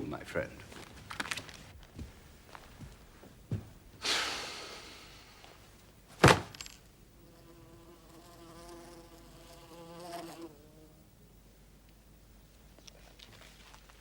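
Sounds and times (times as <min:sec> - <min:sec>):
sharp smack: 0:06.2 - 0:06.5
wasp buzzing: 0:07.2 - 0:11.0.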